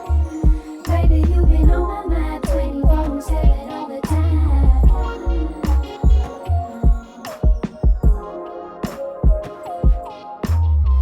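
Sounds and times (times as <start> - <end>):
deep bass line: 0.0 - 6.7, 10.5 - 11.0
kick drum beats: 0.4 - 1.9, 2.5 - 3.7, 4.6 - 8.3, 9.2 - 10.1.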